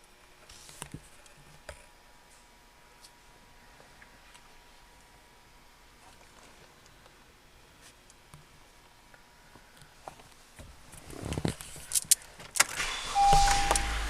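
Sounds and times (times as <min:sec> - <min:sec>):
rustling handling noise: 0:06.0 - 0:07.1.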